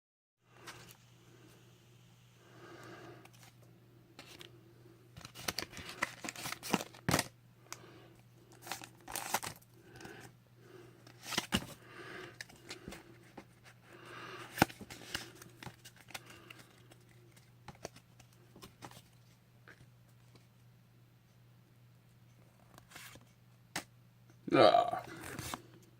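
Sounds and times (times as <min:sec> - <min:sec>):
heavy breathing: 0:02.4 - 0:03.4, 0:09.7 - 0:17.0
foil wrapper tearing and crinkling: 0:08.5 - 0:09.6.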